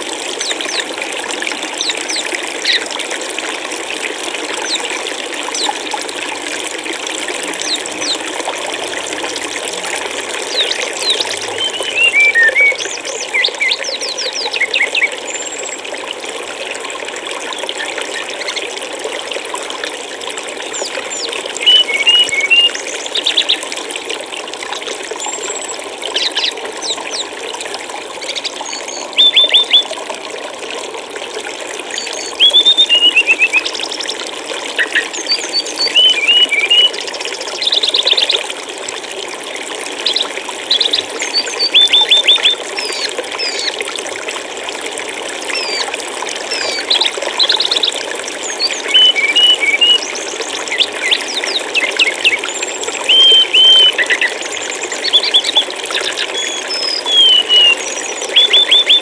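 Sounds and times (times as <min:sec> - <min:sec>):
running water: 0:00.0 - 0:59.0
songbird chirping: 0:10.5 - 0:15.1, 0:32.1 - 0:33.7, 0:53.1 - 0:54.2, 0:56.1 - 0:57.8.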